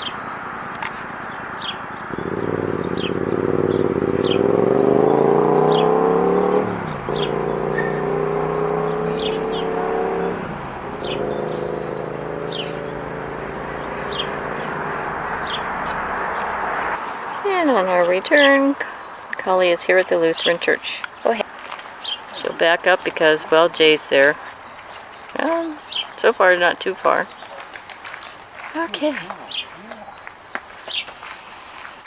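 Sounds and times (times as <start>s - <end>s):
car engine accelerating: 0.0s - 18.6s.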